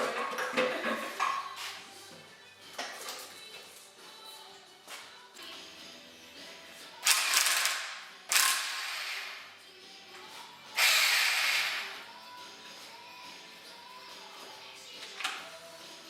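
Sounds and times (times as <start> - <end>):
faint background music: 0.0 - 16.0
ratchet wrench clicking: 7.0 - 9.0.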